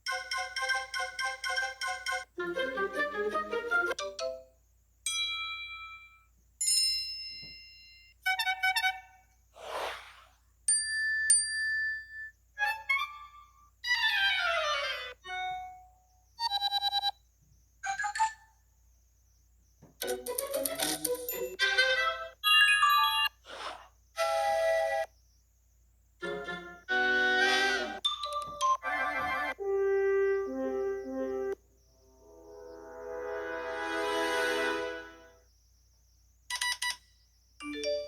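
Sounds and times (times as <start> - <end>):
whoosh: 9.6 - 10.4.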